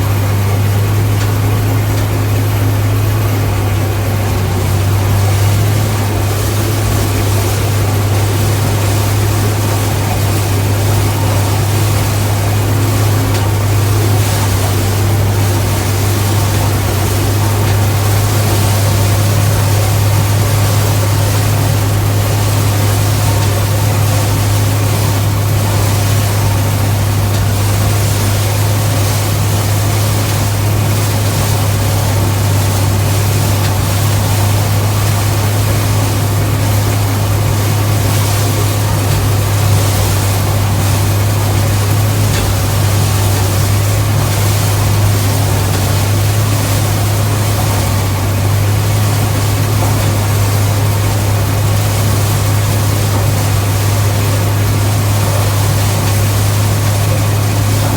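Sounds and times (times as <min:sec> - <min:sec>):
combine harvester drone: 0:00.0 - 0:57.9.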